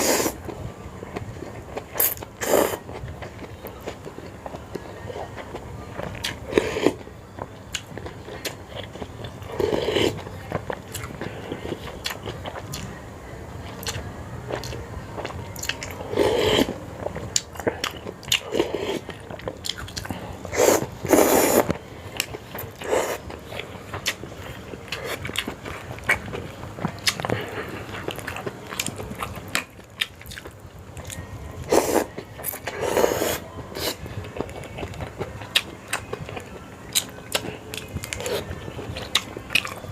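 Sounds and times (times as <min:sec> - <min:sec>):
chewing and biting clicks: 0:24.9 - 0:31.2.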